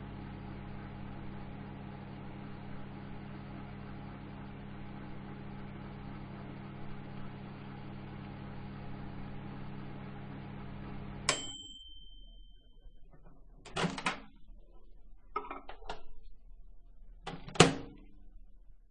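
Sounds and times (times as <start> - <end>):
microwave oven humming: 0.0 - 18.8
microwave ding: 11.2 - 13.1
microwave door clunks: 17.3 - 18.0.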